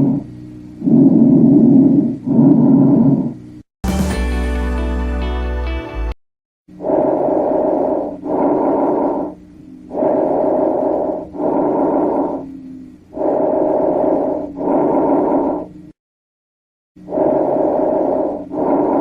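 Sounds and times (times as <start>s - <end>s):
breath sounds through stethoscope: 6.9s - 15.7s.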